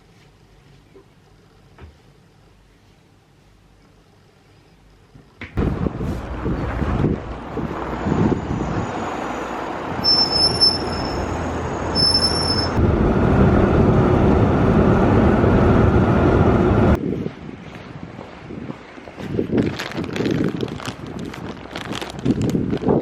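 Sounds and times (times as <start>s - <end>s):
vehicle rumbling: 5.6s - 23.0s
high squeals: 7.9s - 12.8s.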